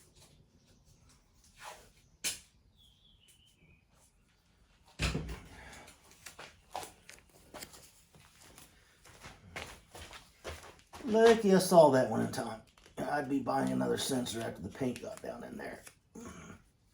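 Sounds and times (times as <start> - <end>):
tools and parts clicking: 6.1 - 8.7.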